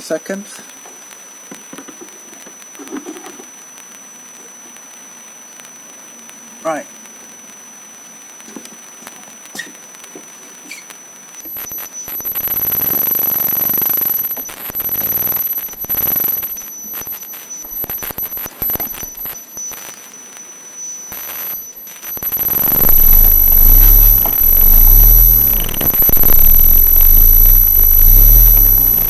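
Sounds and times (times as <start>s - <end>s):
buzzing electrical noise: 0.0s - 29.0s
thin high whines: 10.7s - 29.0s.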